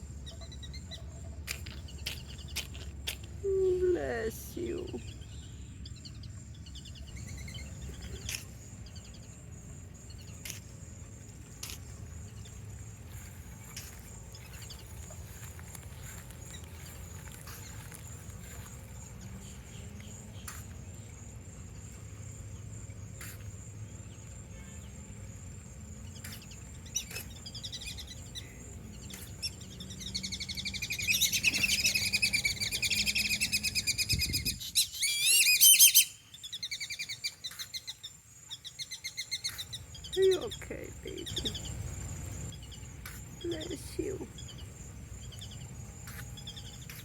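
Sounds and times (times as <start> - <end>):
steady low hum: 0.0 - 34.8, 36.1 - 47.0
ducks whistling calls: 26.2 - 40.6.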